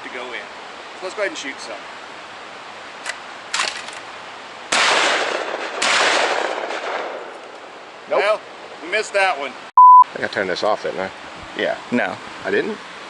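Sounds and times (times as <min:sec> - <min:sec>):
shotgun shots with echo: 0:04.7 - 0:07.3.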